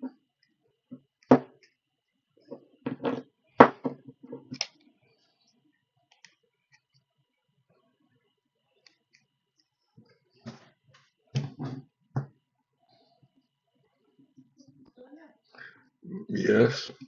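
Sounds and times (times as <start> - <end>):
tools knocking on workbench: 2.9 - 4.1.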